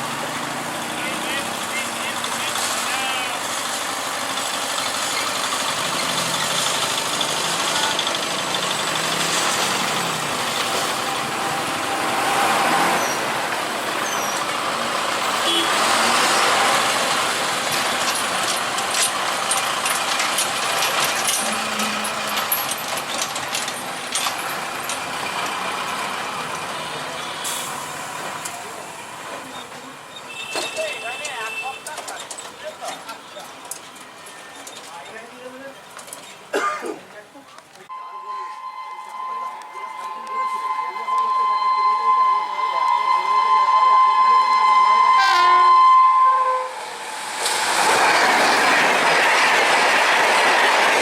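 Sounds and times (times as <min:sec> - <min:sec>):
vehicles passing: 0:00.0 - 0:38.0, 0:39.0 - 0:51.0
sharp rattles and knocks: 0:17.2 - 0:25.6.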